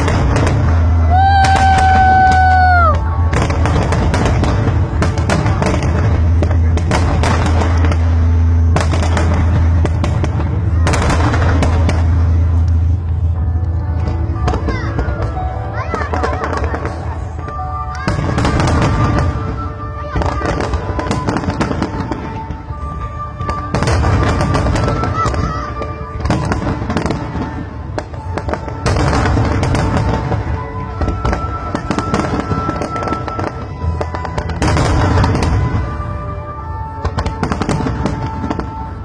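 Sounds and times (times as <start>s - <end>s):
fireworks bangs and crackling: 0.0s - 39.0s
music with long held notes: 0.0s - 39.0s.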